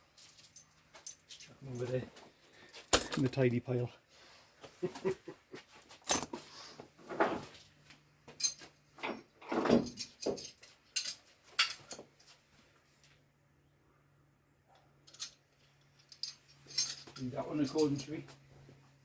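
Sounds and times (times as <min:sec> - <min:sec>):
metal parts clinking and clattering: 0:00.1 - 0:02.0, 0:02.7 - 0:03.4, 0:06.0 - 0:06.4, 0:08.4 - 0:12.0, 0:15.0 - 0:18.2.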